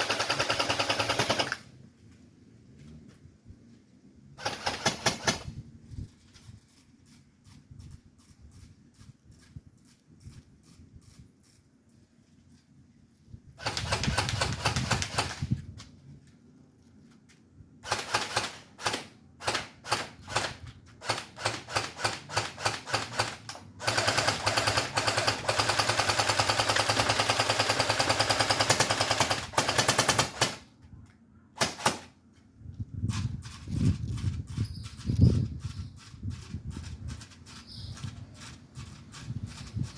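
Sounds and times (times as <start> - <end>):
airsoft gun firing: 0.0 - 1.6, 13.6 - 15.5, 31.6 - 32.1.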